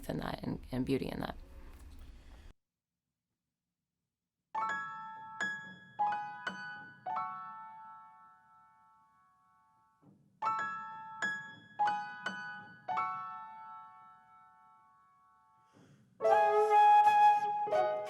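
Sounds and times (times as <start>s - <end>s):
flute holding notes: 16.2s - 18.0s.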